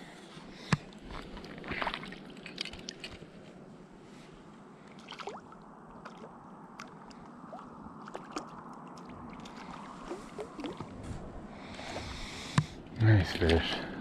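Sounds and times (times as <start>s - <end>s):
stream water running: 0.4s - 14.0s
water splashing: 4.8s - 13.7s.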